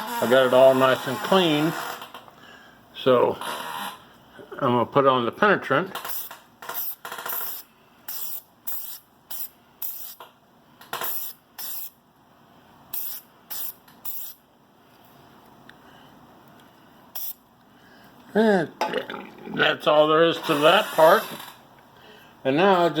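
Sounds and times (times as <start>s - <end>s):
aerosol can spraying: 12.9s - 14.4s.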